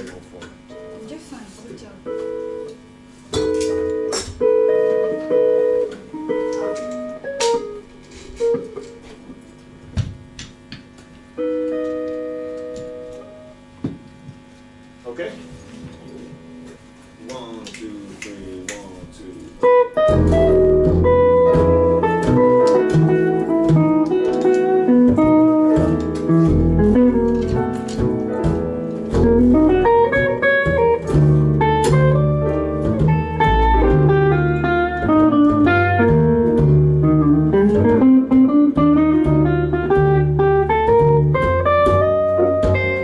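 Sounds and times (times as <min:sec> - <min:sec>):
electric guitar melody: 0:00.0 - 0:14.8, 0:15.4 - 0:17.0, 0:19.6 - 0:43.0
band playing blues-jazz: 0:03.5 - 0:09.2, 0:19.6 - 0:43.0.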